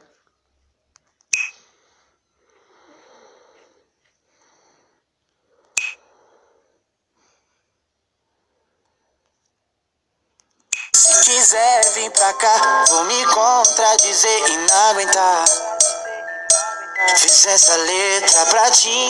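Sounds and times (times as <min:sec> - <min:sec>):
phone screen clicks: 0:01.4 - 0:01.6, 0:05.8 - 0:06.0.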